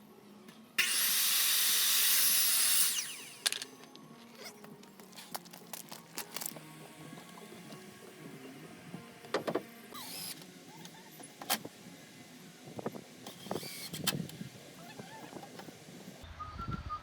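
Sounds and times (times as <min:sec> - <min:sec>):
small power tool motor whirrs: 0:00.8 - 0:03.7, 0:10.0 - 0:11.7, 0:13.3 - 0:15.9.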